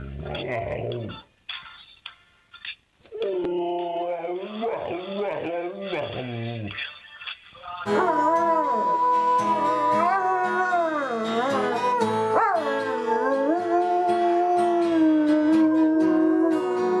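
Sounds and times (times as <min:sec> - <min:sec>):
music: 0:07.8 - 0:17.0
dog howling: 0:07.9 - 0:17.0.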